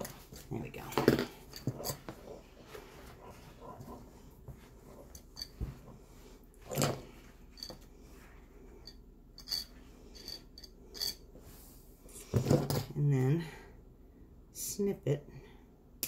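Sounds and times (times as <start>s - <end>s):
light clicks and metallic clinks: 5.1s - 5.6s.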